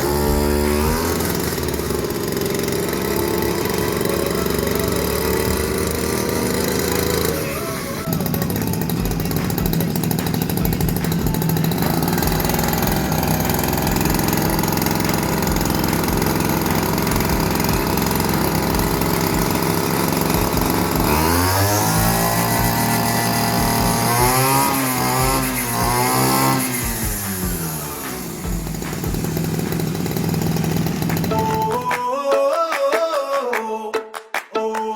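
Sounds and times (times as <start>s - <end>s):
brush cutter engine revving: 0.0s - 32.0s.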